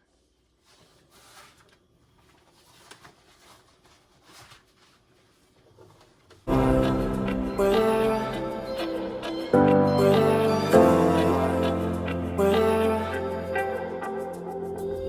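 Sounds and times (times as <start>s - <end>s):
soft rustling and handling: 0.1s - 6.5s
background music: 6.5s - 15.0s.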